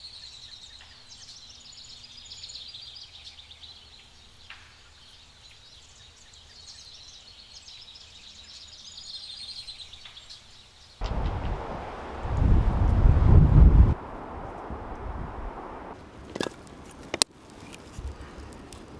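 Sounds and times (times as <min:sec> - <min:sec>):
songbirds chirping and trilling: 0:11.0 - 0:16.0
wind on microphone: 0:11.0 - 0:16.0.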